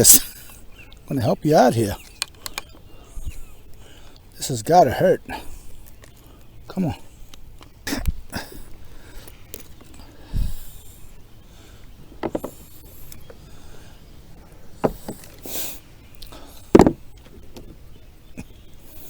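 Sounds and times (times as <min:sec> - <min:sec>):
brief hiss: 0:00.0 - 0:00.3
fish knocking and thumping: 0:12.2 - 0:12.6, 0:16.8 - 0:17.0.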